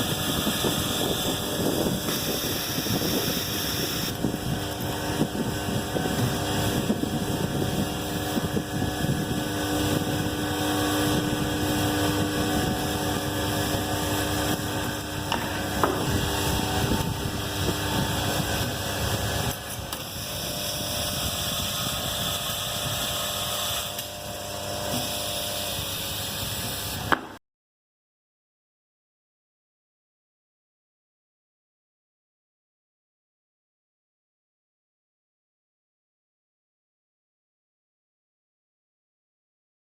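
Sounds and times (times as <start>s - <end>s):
welding machine humming: 0.0s - 27.1s.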